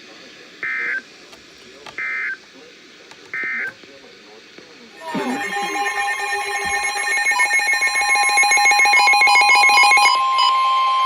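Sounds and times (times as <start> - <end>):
pulsing stepping electronic tones: 5.0 - 10.1
two-tone electronic alarm: 5.0 - 11.0.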